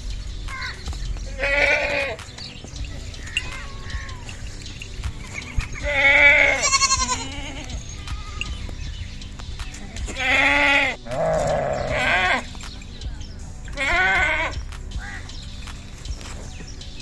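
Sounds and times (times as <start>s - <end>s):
young goats bleating: 1.3s - 2.2s, 5.2s - 8.8s, 10.2s - 12.5s, 13.8s - 14.5s.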